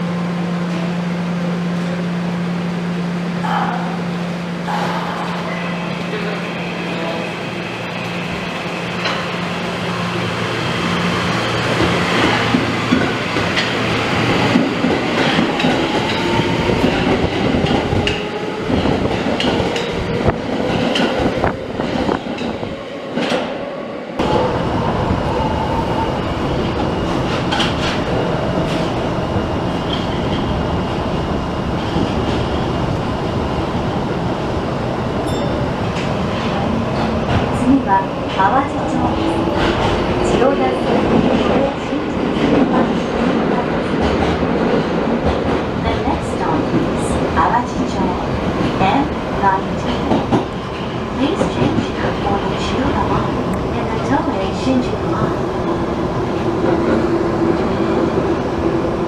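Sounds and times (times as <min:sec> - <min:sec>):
train wheels clattering on rails: 0:11.6 - 0:23.6, 0:26.9 - 0:29.0, 0:35.3 - 0:54.6.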